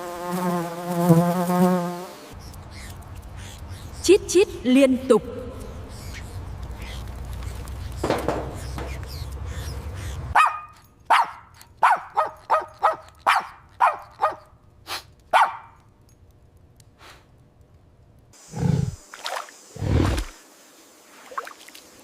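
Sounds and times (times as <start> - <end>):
small animal yipping: 2.4 - 4.0, 6.0 - 8.0.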